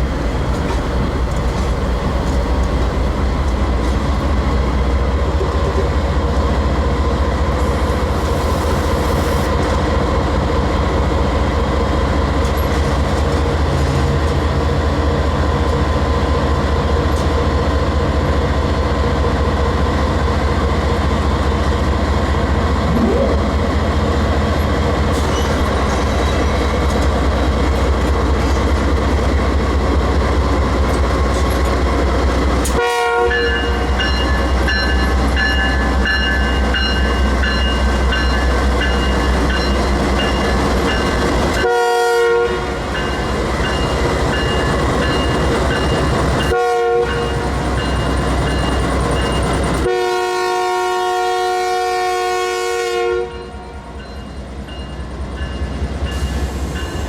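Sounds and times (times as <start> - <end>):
diesel locomotives rumbling: 0.0 - 57.0
train air horn blasts: 32.7 - 33.9, 41.6 - 42.8, 46.5 - 47.3, 49.8 - 53.8
locomotive bell ringing: 33.3 - 41.8, 42.8 - 49.6, 53.3 - 57.0.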